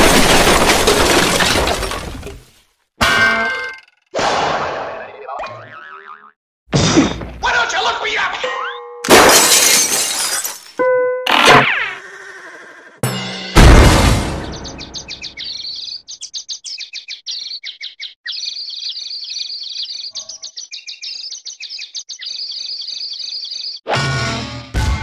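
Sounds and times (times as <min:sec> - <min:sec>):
cartoon crash: 0:11.3 - 0:12.0, 0:13.0 - 0:14.8
sudden loud hit: 0:13.0 - 0:14.7
rapid high bird tweeting: 0:14.4 - 0:23.8.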